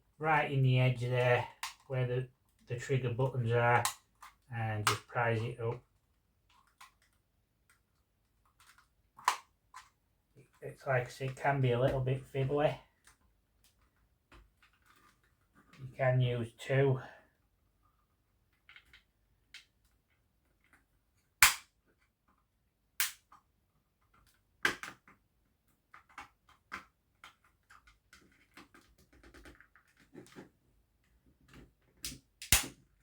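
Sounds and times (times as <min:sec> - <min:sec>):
plastic clips snapping: 0:08.6 - 0:09.9, 0:21.4 - 0:21.7, 0:32.0 - 0:32.8
plastic scraping on plastic: 0:26.0 - 0:30.6.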